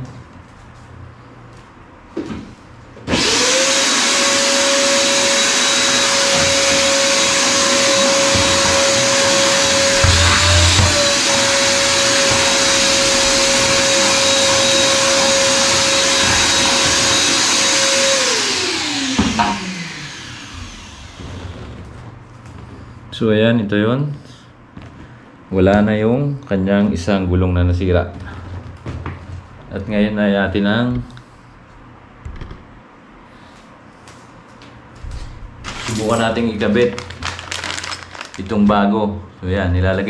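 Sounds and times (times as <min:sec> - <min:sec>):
vacuum cleaner running: 0:03.0 - 0:22.9.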